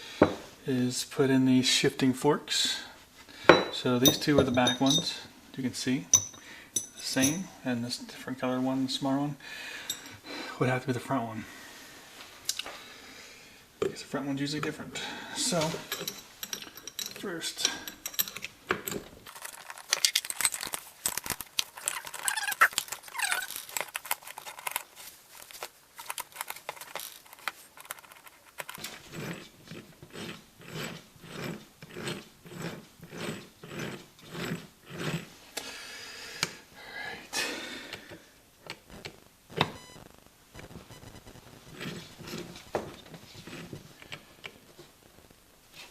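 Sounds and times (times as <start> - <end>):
metal gearbox parts clicking: 15.9 - 24.9.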